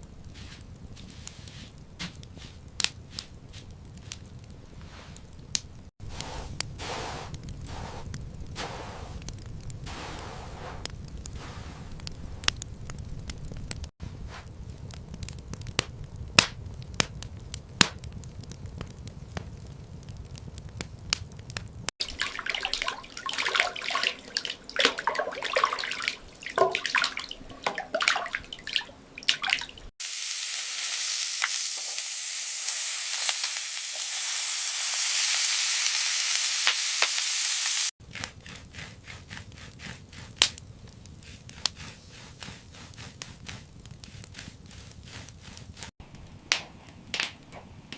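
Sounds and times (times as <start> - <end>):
steady high hiss: 30.0 - 37.9.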